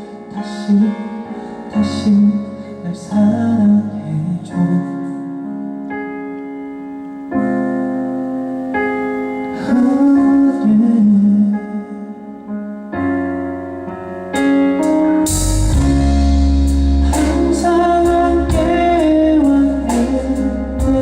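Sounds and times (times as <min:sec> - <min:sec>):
electric piano chords: 0:00.0 - 0:21.0
drums and bass: 0:14.4 - 0:21.0.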